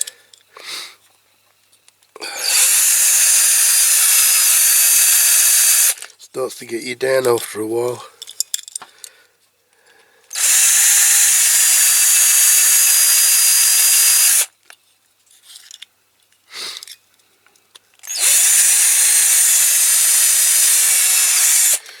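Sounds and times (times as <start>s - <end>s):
electric drill drilling into metal: 2.3s - 6.0s, 10.3s - 14.5s, 18.0s - 22.0s.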